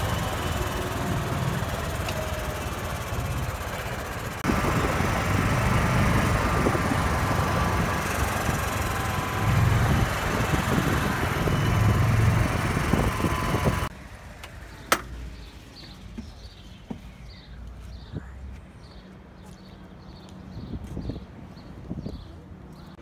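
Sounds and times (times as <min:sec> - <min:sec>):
golf cart motor rumble: 0:00.0 - 0:17.8
wind rushing: 0:04.4 - 0:13.9.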